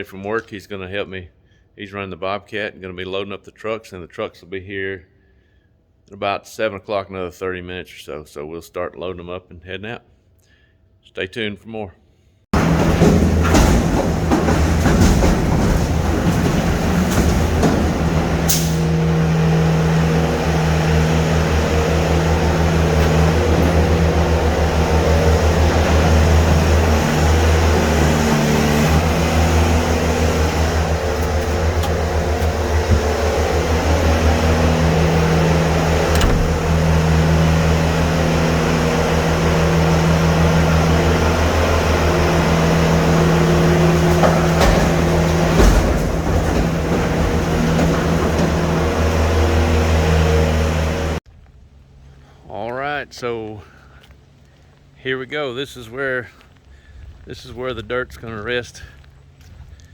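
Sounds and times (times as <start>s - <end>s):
vehicle engine humming: 12.6s - 51.2s
brief knocks: 36.1s - 36.8s.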